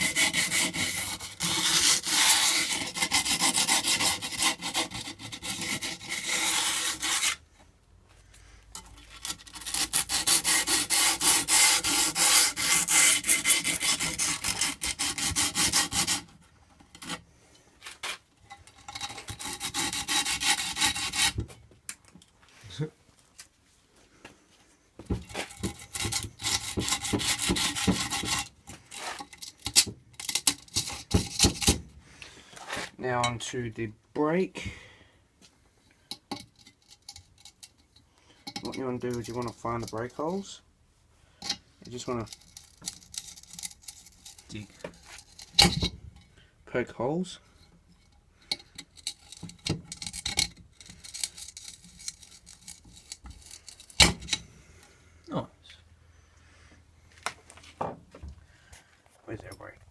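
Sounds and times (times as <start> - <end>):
grip tape rasping on scooter deck: 0.0 - 7.4, 8.8 - 21.6, 25.2 - 31.8, 41.9 - 45.8, 48.5 - 54.4.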